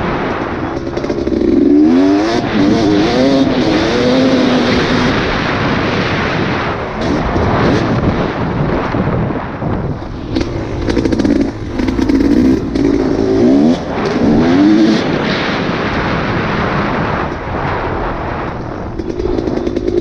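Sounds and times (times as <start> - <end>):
wind buffeting microphone: 0.0 - 20.0
off-road vehicle engine revving: 1.0 - 5.7, 10.0 - 15.3.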